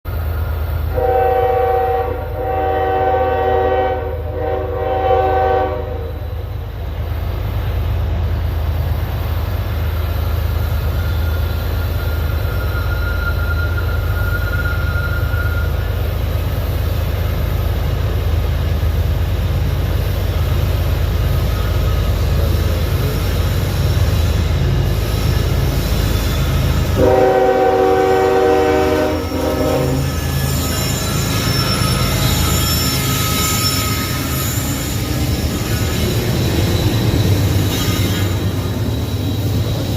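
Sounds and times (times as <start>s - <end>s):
locomotive multi-tone horn: 0.9s - 6.4s, 26.3s - 36.1s.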